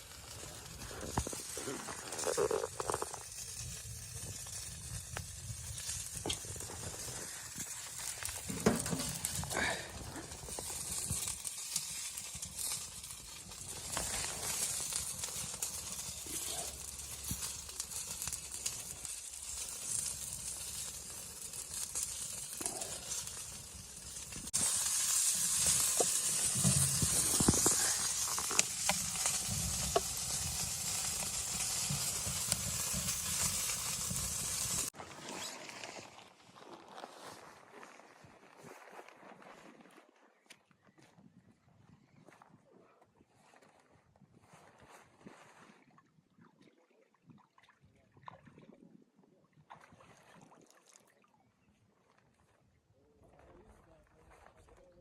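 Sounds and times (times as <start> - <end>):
steady hiss: 0.0 - 34.9.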